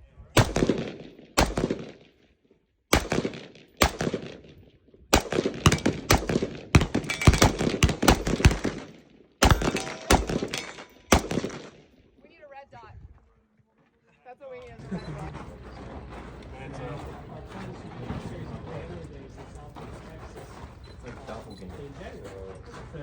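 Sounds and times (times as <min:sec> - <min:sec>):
rifle shots with echo: 0:00.4 - 0:02.2, 0:02.9 - 0:12.0.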